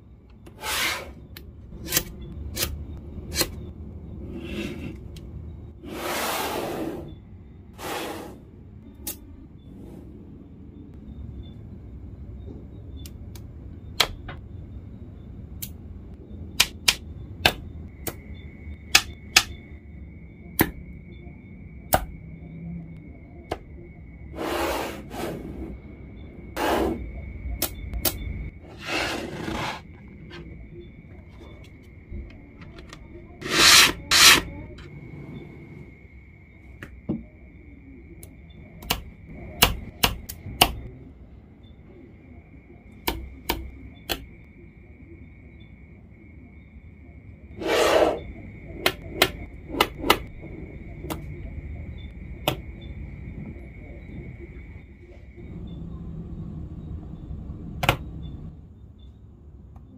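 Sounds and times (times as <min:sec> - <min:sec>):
magnetic balls scraping: 0:28.6 - 0:30.5, 0:32.7 - 0:34.9, 0:47.6 - 0:48.3.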